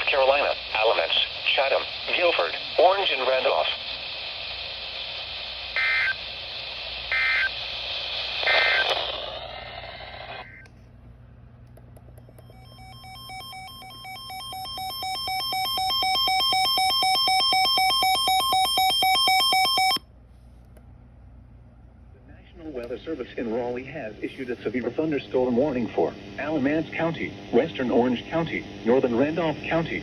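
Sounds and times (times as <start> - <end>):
radio hiss: 0.0 - 10.7, 22.2 - 30.0
warbling data tones: 12.3 - 20.0.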